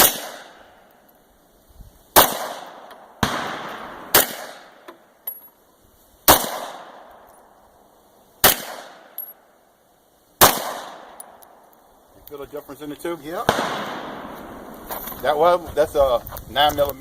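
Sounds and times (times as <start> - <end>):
pistol shots: 0.0 - 0.7, 2.2 - 4.9, 6.3 - 7.2, 8.4 - 9.2, 10.4 - 11.5, 13.4 - 14.9.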